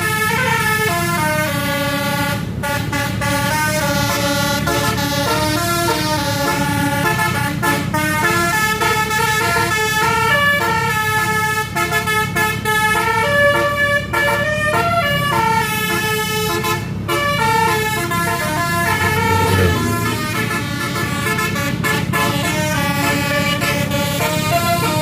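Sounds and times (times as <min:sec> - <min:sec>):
bus horn playing a tune: 0:00.0 - 0:25.0
steady low rumble: 0:18.3 - 0:21.3.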